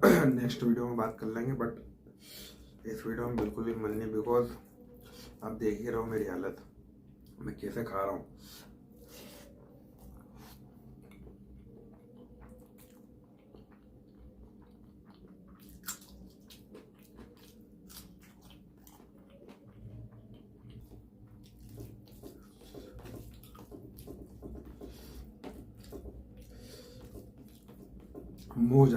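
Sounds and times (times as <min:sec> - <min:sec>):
steady low hum: 0:00.0 - 0:28.9
chewing and wet mouth noises: 0:08.9 - 0:28.6.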